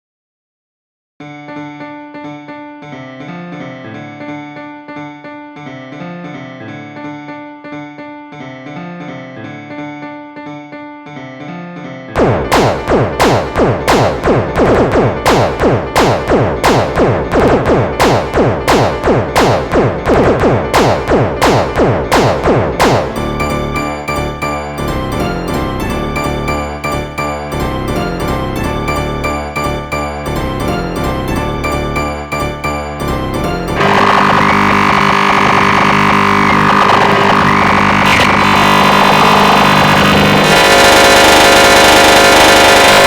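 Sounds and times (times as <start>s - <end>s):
synthesized keyboard ringtone melody: 12.2s - 34.7s.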